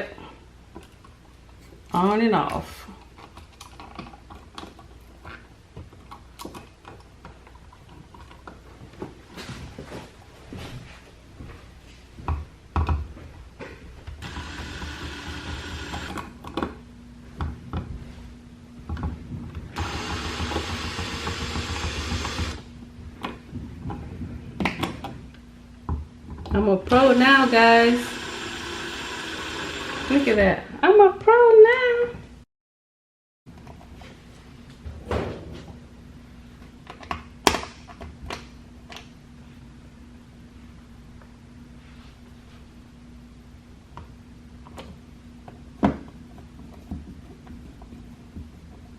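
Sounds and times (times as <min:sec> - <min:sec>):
cordless drill motor running: 0:14.2 - 0:16.2, 0:19.8 - 0:22.6, 0:26.9 - 0:30.4.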